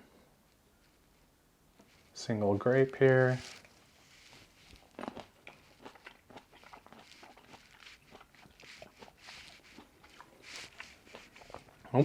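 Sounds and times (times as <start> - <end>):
chewing grape: 3.4 - 12.0.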